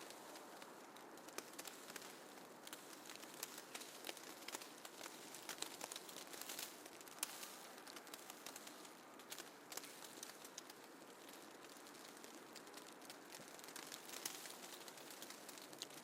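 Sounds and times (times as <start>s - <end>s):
small ticks and crackles: 0.0s - 16.0s
soft steady hiss: 0.0s - 16.0s.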